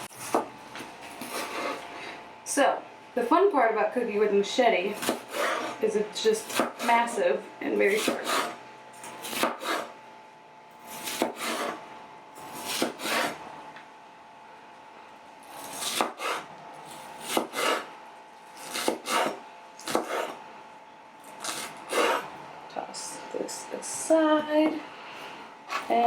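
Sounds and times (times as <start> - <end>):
machete chopping onion on board: 0.0 - 0.5, 5.0 - 5.8, 6.4 - 6.9, 7.9 - 8.6, 9.2 - 9.9, 10.9 - 11.8, 12.5 - 13.4, 15.6 - 17.9, 18.6 - 20.4, 21.4 - 22.3.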